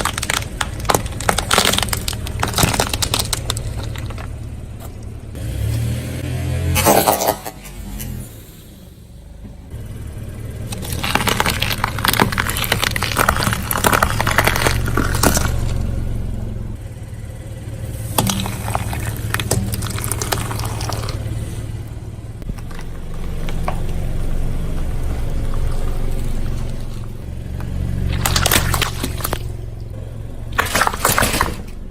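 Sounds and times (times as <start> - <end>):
tyre crushing brittle objects: 0.0 - 5.1, 10.6 - 16.0, 18.0 - 29.8, 30.5 - 31.9
low engine hum: 0.0 - 31.9.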